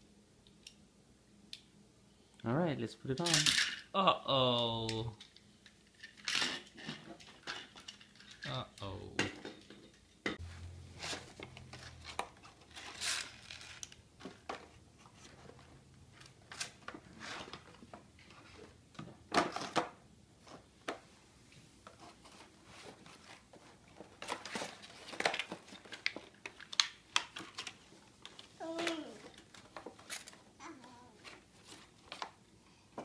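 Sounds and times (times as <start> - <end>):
plastic toy parts clicking and knocking: 3.1 - 3.9, 24.1 - 30.5.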